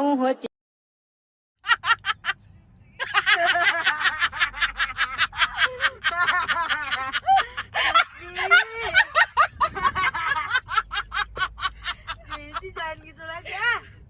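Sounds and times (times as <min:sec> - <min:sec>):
person laughing hard: 0:03.0 - 0:12.6.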